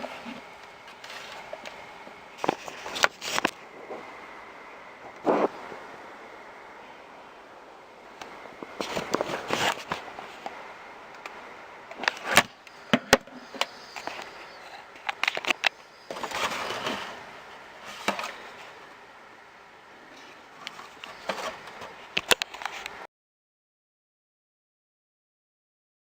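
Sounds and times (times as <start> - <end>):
rushes of noise from speaker: 5.2 - 6.0.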